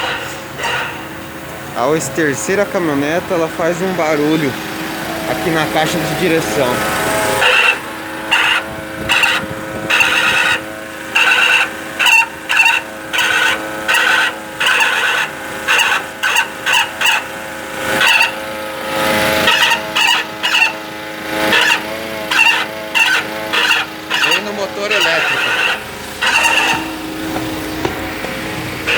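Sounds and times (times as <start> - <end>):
steady hum: 0.0 - 13.2, 19.6 - 28.9
steering box squeaking: 0.0 - 28.9.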